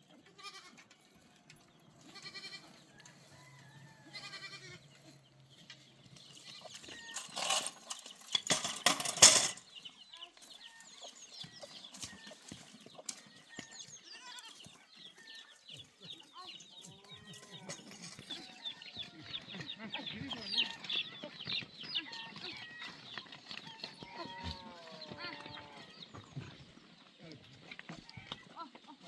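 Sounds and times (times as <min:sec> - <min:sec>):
chickens clucking and chirping: 0:00.0 - 0:29.0
goats bleating: 0:00.1 - 0:00.9, 0:02.0 - 0:02.8, 0:04.0 - 0:05.0, 0:24.0 - 0:25.9.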